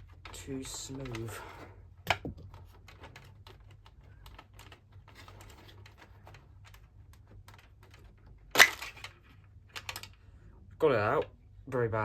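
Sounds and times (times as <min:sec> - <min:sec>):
small clicks and taps on wiring: 0:00.0 - 0:01.4, 0:02.0 - 0:08.4.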